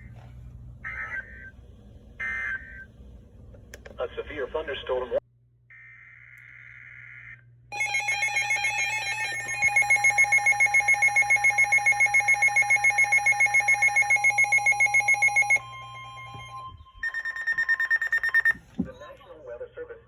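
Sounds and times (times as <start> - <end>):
harsh electronic beeping: 7.8 - 18.6.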